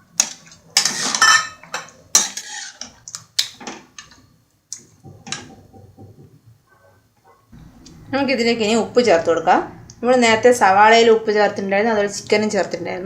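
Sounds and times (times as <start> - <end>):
metal utensil scraping a pan: 0.8 - 3.0.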